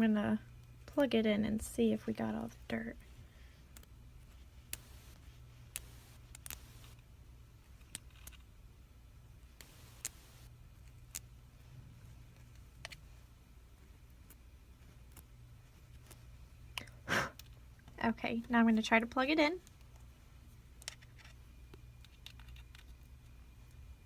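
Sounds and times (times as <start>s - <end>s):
low steady hum: 0.0s - 24.0s
toothpick clicking and scratching: 7.8s - 8.4s.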